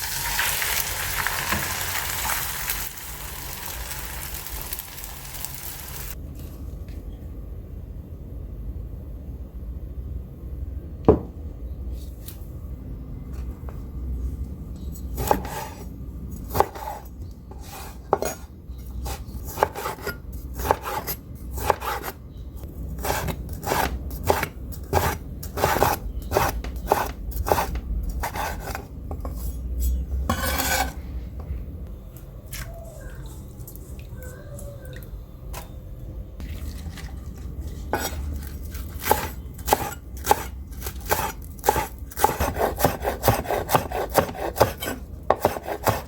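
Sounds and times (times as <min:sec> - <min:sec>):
utensils knocking and scraping bowl: 0:39.0 - 0:46.0.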